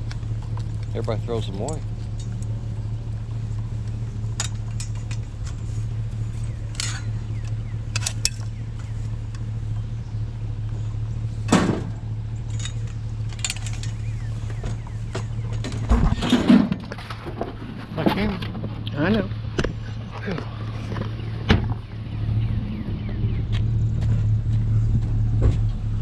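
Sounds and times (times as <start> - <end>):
truck engine and road drone: 0.0 - 26.0
small rattles and clicks: 3.5 - 5.8, 12.4 - 14.1.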